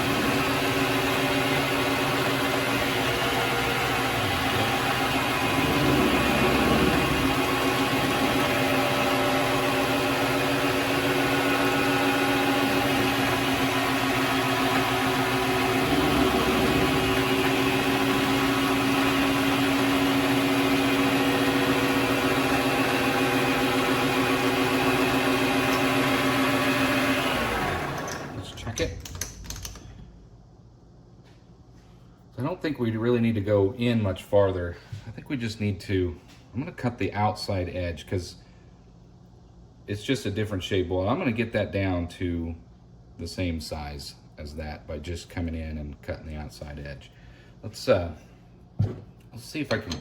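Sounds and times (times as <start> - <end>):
lathe motor whine: 0.0 - 28.5.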